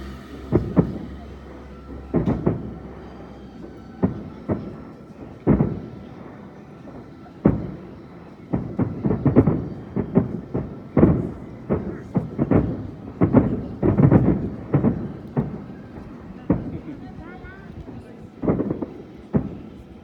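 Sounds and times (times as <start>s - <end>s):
fireworks shells bursting: 0.0s - 20.0s.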